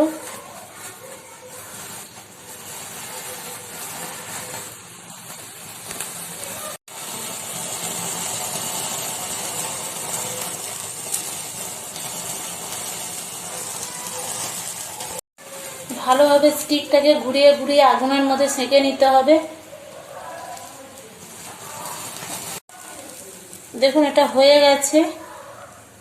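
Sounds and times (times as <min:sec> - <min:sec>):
gas burner flame hissing: 0:00.0 - 0:26.0.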